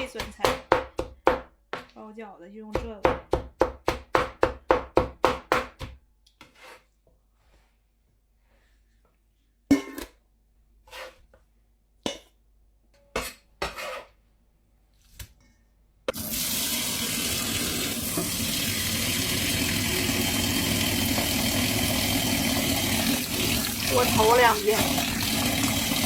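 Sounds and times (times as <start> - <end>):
kitchen tap running: 16.1 - 26.0.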